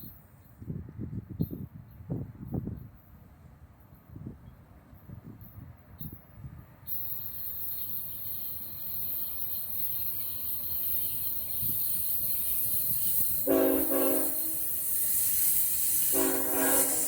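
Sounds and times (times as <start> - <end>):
freight train rumble and hiss: 0.0 - 17.0
locomotive air horn chord: 13.4 - 14.8, 16.1 - 17.0.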